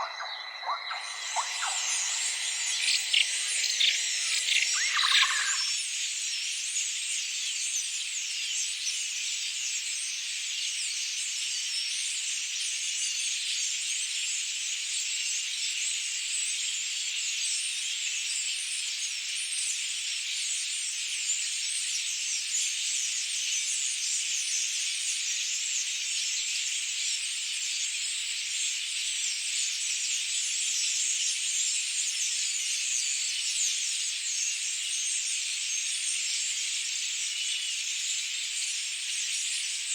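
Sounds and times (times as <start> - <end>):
high-pitched insect chorus: 0.0 - 5.8.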